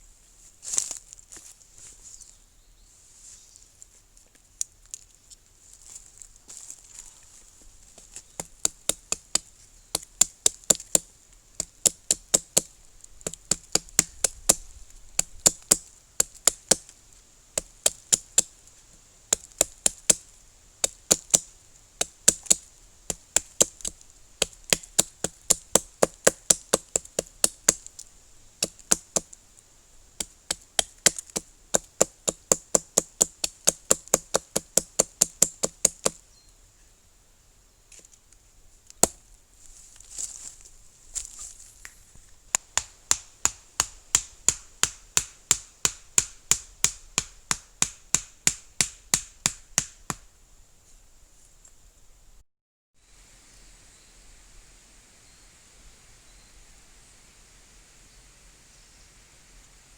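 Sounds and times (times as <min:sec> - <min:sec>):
axe chopping wood: 0:08.0 - 0:16.9, 0:17.6 - 0:18.5, 0:19.3 - 0:27.9, 0:28.6 - 0:29.3, 0:30.2 - 0:36.2, 0:42.5 - 0:50.3.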